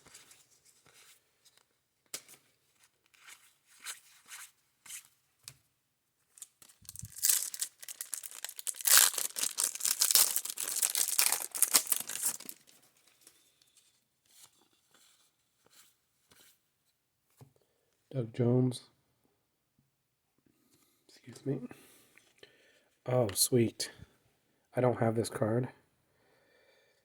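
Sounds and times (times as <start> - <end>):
wrapper tearing and crinkling: 6.4 - 12.8.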